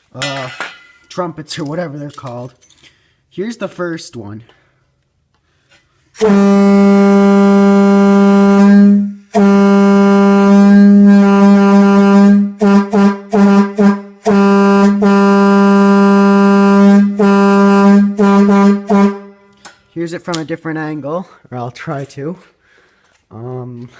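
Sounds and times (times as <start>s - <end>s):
train air horn blasts: 6.2s - 19.6s.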